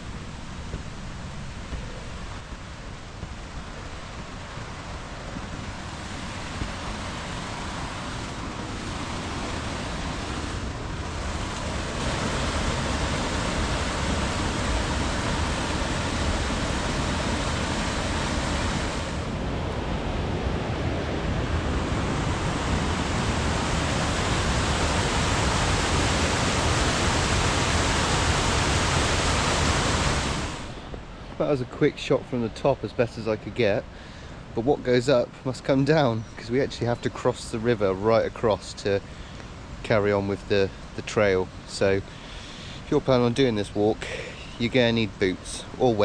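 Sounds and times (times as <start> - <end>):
waterfall rushing: 0.0 - 30.8.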